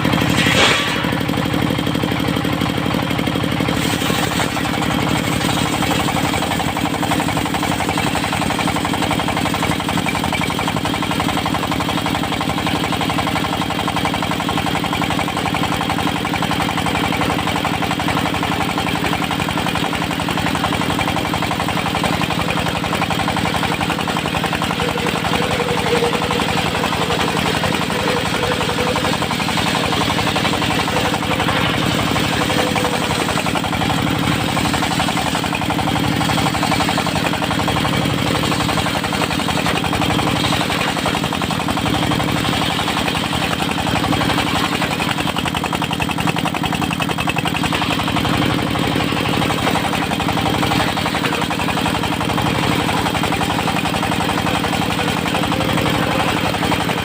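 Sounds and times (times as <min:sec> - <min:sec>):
saw blade cutting log: 0:00.0 - 0:01.2, 0:03.7 - 0:10.2, 0:17.8 - 0:41.7
diesel engine running: 0:00.0 - 0:57.0.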